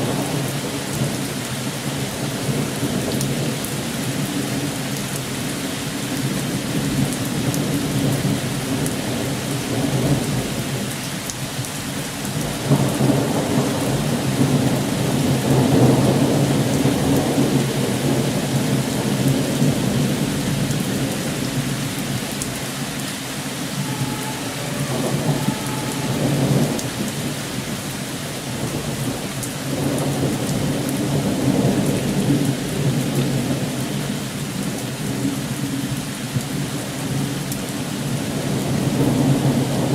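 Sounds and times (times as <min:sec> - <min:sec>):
heavy rain falling: 0:00.0 - 0:39.9
thunder rumbling: 0:12.3 - 0:34.1.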